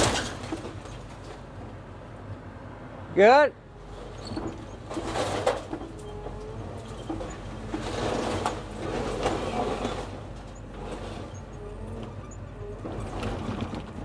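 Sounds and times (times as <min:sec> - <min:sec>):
debris crunching and crashing: 0:00.0 - 0:01.5, 0:04.0 - 0:11.4.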